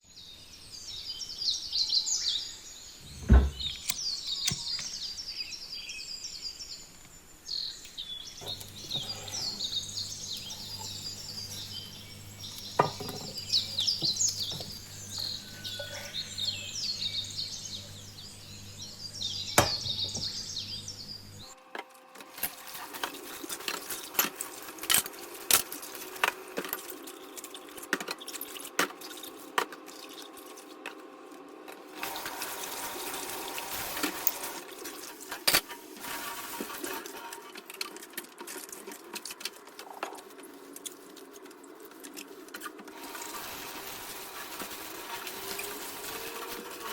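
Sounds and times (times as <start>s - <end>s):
small birds chirping: 0.0s - 21.5s
steady hum: 8.4s - 28.1s
sharp thumps: 19.5s - 20.4s.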